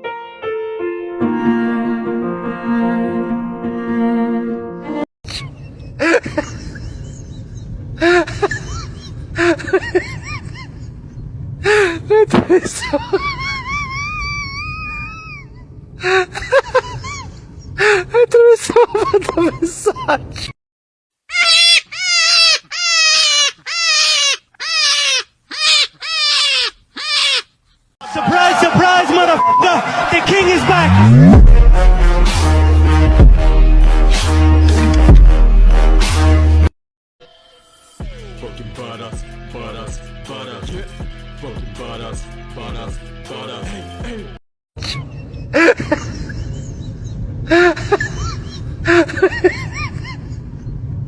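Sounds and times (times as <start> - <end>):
bowed string music: 1.2 - 5.0
pet crying: 21.3 - 27.6.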